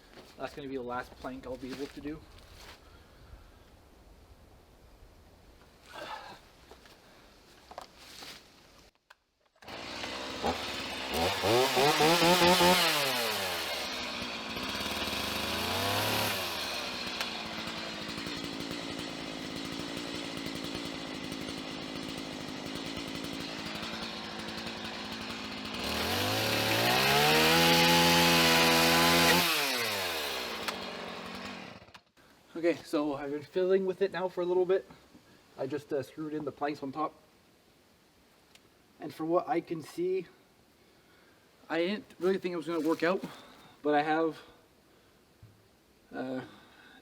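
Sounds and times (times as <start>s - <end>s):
chainsaw revving and idling: 9.6s - 32.0s, 42.2s - 44.4s.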